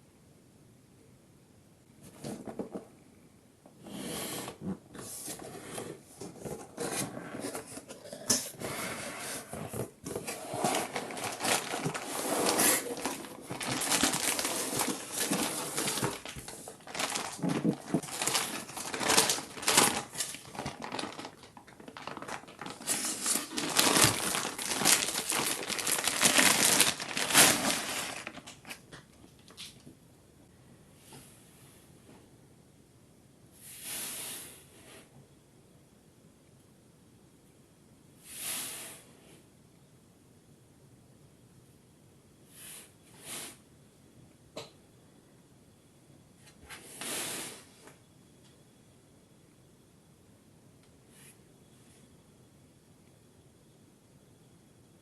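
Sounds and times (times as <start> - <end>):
crinkling and rustling: 2.0 - 3.0, 4.5 - 30.0.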